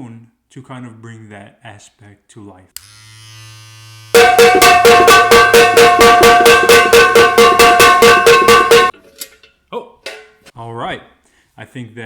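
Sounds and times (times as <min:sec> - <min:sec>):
metal struck with wooden spoon: 0:04.2 - 0:09.0.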